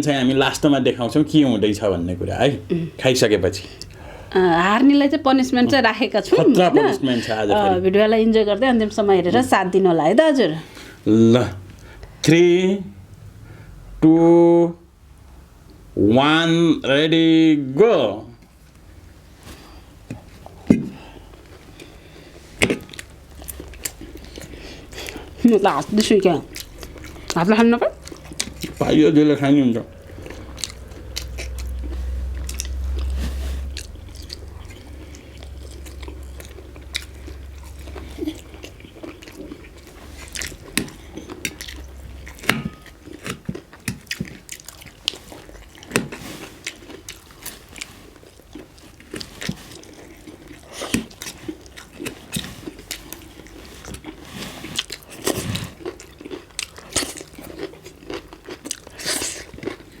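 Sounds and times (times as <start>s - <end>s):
people chewing and biting: 3.6s - 4.1s, 18.4s - 60.0s
low hum: 21.0s - 45.8s
mouth smacks: 22.6s - 25.4s.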